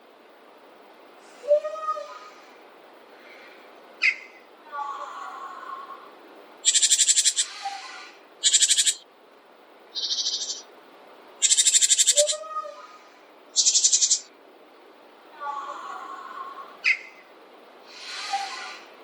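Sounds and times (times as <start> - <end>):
songbirds buzzy rattling trills: 3.2 - 4.5, 6.6 - 9.1, 9.9 - 10.7, 11.4 - 14.4, 16.8 - 18.9.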